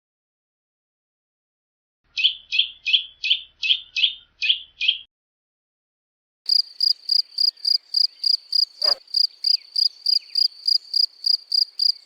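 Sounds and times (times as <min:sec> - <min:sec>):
cricket chirping: 0:06.5 - 0:12.0.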